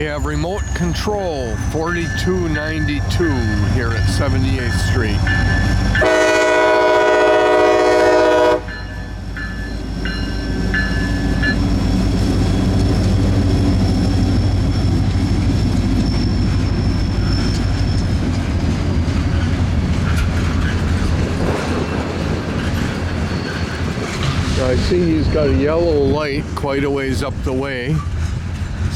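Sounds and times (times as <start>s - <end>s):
freight train rolling: 0.0s - 28.9s
locomotive engine rumbling: 0.0s - 28.9s
locomotive air horn: 6.0s - 8.9s.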